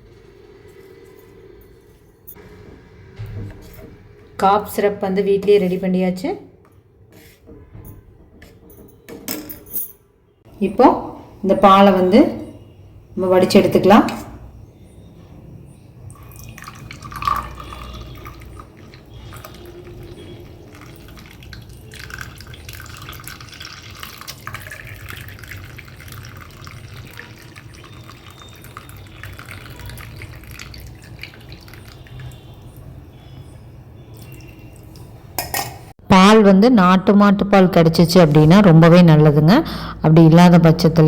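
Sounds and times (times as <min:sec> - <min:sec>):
milk trickling into a cup: 0:16.1 - 0:33.4, 0:34.0 - 0:35.1.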